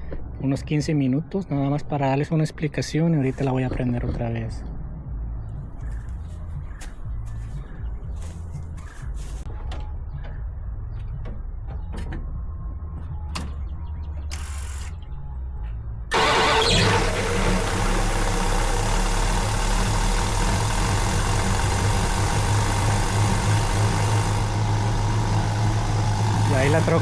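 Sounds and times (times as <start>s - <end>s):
pickup engine starting and idling: 16.1s - 27.0s.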